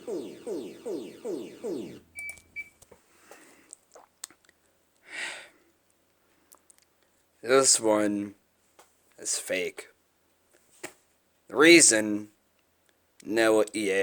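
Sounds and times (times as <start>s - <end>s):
alarm tone falling sweeps: 0.0s - 2.7s
short high beeps: 1.8s - 2.8s.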